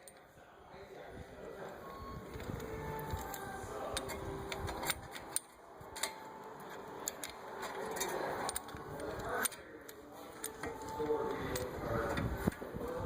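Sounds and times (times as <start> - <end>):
metallic clicks of brake tool: 2.3 - 6.4, 7.0 - 12.6.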